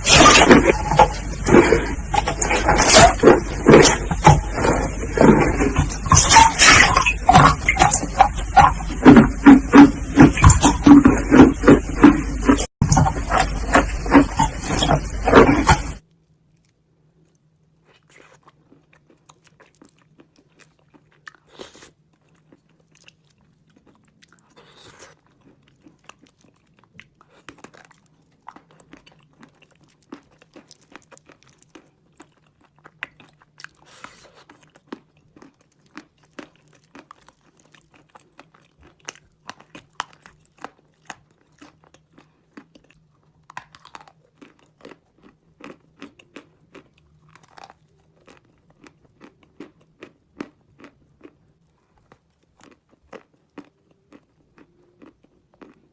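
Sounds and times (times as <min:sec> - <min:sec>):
chalk being chewed: 0:16.5 - 0:55.8.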